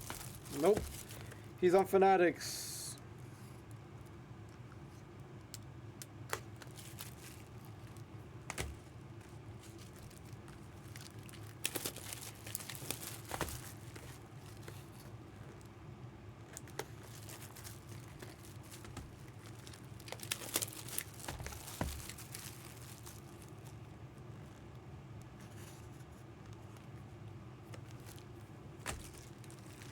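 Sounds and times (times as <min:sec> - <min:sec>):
plastic packaging crinkling: 0:00.0 - 0:02.0, 0:05.5 - 0:15.7, 0:16.4 - 0:24.8, 0:27.7 - 0:29.9.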